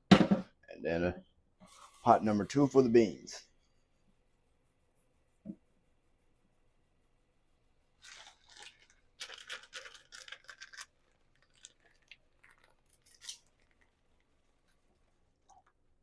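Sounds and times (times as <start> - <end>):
packaging crinkling and tearing: 8.0 - 13.9.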